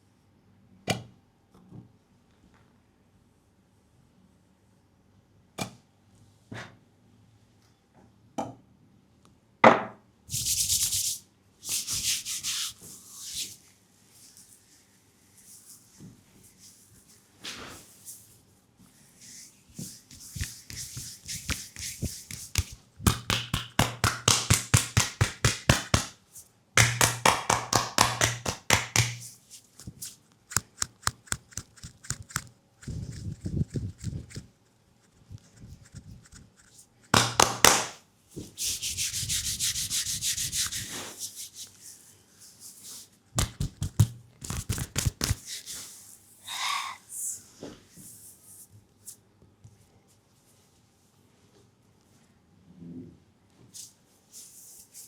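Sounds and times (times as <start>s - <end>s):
rubbing strokes on skin: 10.3s - 46.4s, 53.8s - 55.0s.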